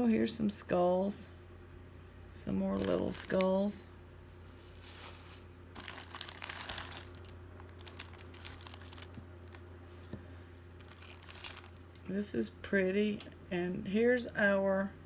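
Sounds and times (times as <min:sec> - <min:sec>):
plastic crinkling and rustling: 0:02.7 - 0:03.6, 0:04.4 - 0:12.1.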